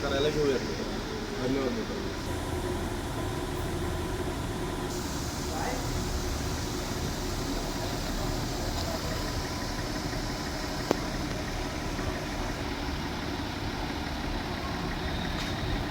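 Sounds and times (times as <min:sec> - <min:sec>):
diesel engine idling with knocking: 0:00.0 - 0:15.9.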